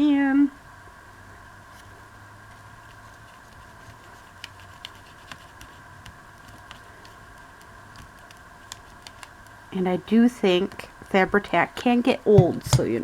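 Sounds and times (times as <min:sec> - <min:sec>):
faint electrical hum: 0:00.0 - 0:13.0
paper and glue bottle tapping: 0:12.4 - 0:13.0.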